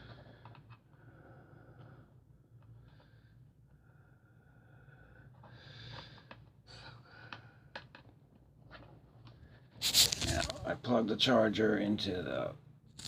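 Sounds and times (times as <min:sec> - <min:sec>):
soft rustle: 0:09.8 - 0:10.7.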